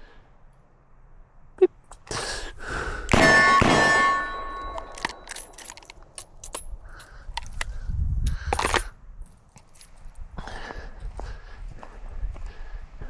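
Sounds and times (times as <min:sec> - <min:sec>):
steel target ringing: 0:03.1 - 0:06.6
handling clicks and knocks: 0:03.1 - 0:07.7, 0:08.3 - 0:08.9.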